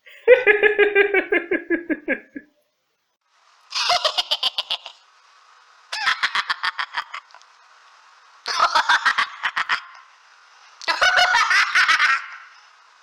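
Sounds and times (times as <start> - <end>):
high-pitched giggling: 0.0 - 2.5
faint hiss: 0.0 - 13.0.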